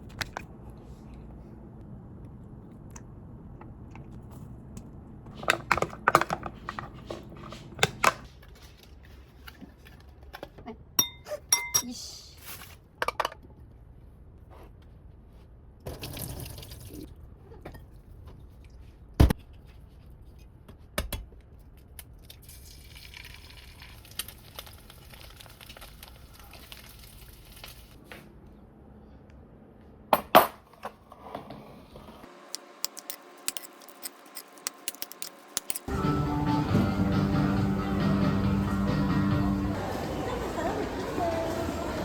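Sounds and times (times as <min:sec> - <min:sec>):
dishes knocking and clinking: 0:05.3 - 0:08.2.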